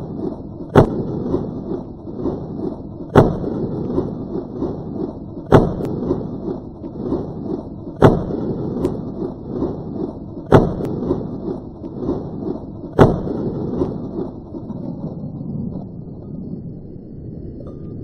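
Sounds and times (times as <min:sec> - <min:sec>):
gunshots: 0:00.0 - 0:14.4.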